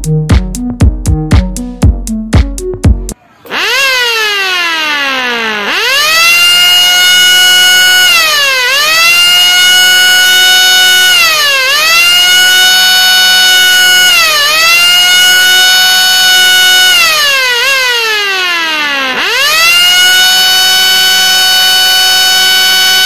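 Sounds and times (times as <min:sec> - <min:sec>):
air raid siren wailing: 0:03.1 - 0:23.0.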